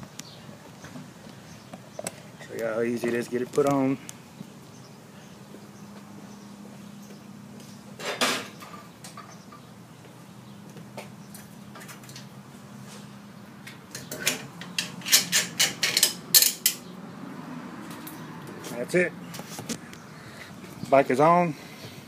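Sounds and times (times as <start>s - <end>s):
sharp metallic clicks and knocks: 13.6s - 16.8s.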